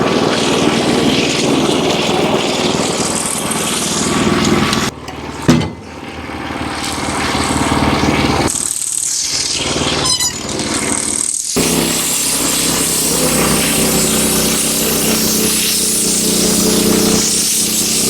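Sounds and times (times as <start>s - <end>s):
small engine droning: 0.0s - 18.0s
band blade sawing wood: 11.6s - 18.0s.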